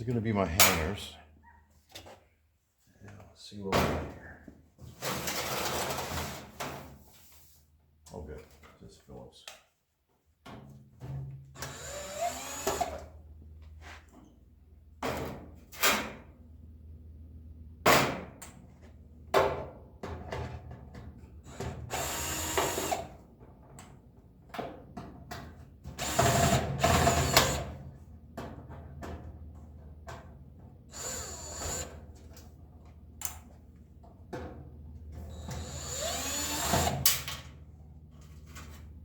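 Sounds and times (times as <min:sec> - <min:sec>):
power drill bursts: 0:11.7 - 0:13.0, 0:21.9 - 0:23.1, 0:26.0 - 0:27.7, 0:30.9 - 0:31.9, 0:35.4 - 0:37.0.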